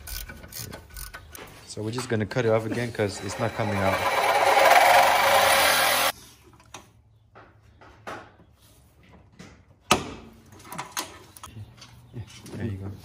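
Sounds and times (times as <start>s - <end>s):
power cutting tool cutting metal: 3.1s - 6.1s.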